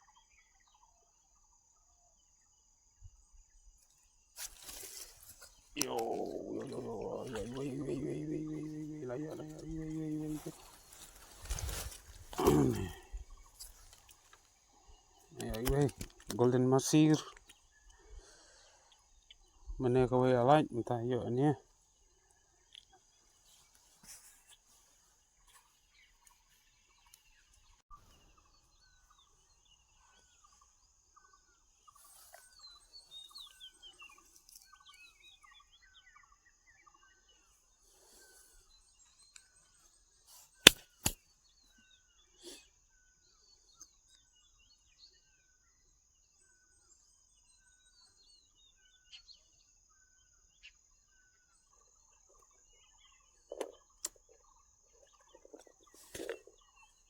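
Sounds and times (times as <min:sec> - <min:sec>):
bird chirping: 0:00.0 - 0:57.0
sharp clicks: 0:15.4 - 0:16.5.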